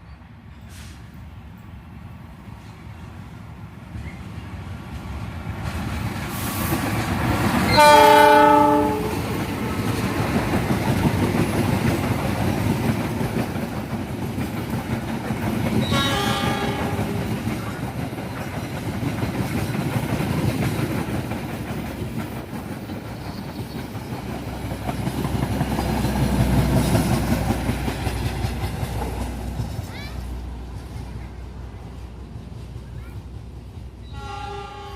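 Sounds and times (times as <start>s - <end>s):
train rumble and wheel clatter: 0.0s - 34.9s
locomotive horn blasts: 7.7s - 9.2s, 15.8s - 17.2s, 34.1s - 34.9s.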